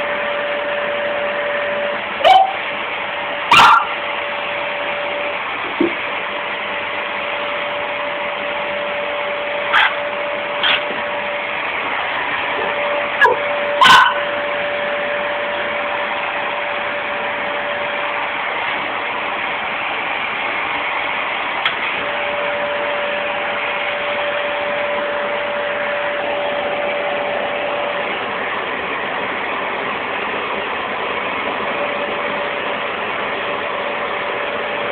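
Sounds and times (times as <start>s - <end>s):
vacuum cleaner motor whine: 0.0s - 34.9s
dog barking and yipping: 2.2s - 2.6s, 3.5s - 4.0s, 9.7s - 11.0s, 12.6s - 14.3s.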